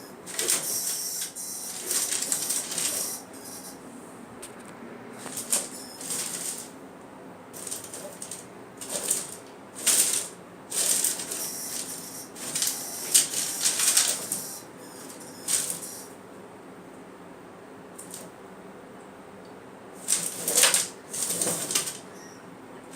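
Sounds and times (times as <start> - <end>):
scratching and rattling in a pipe: 0.3 - 0.9, 1.8 - 3.2, 7.6 - 14.5, 20.0 - 22.1.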